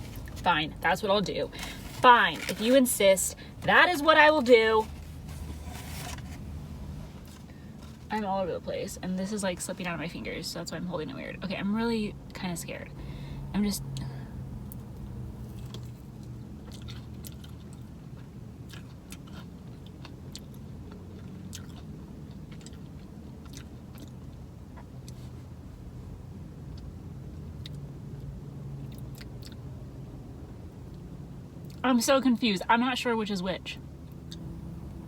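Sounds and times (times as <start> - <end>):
steady low hum: 0.0 - 17.5, 33.5 - 35.0.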